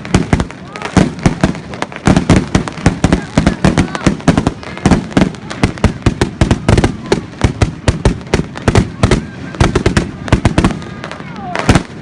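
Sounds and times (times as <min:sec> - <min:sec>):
fireworks banging: 0:00.0 - 0:12.0.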